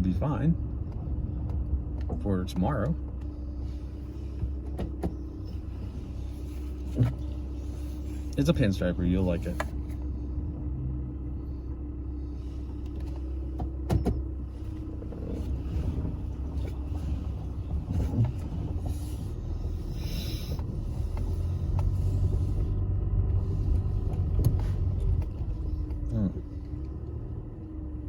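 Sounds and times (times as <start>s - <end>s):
car engine and road noise: 0.0s - 28.0s.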